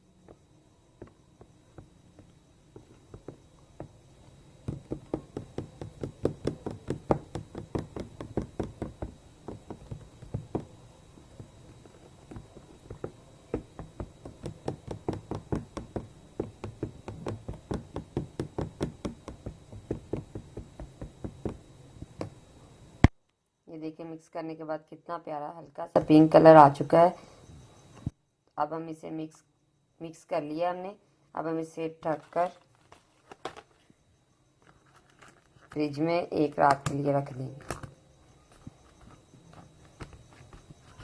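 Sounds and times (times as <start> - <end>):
utensil knocking against a bowl: 4.6 - 10.7, 12.3 - 21.6.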